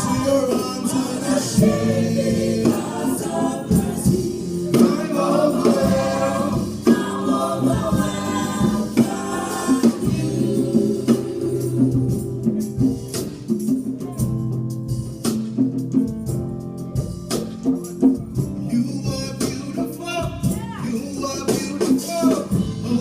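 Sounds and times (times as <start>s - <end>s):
drums: 0.0s - 23.0s.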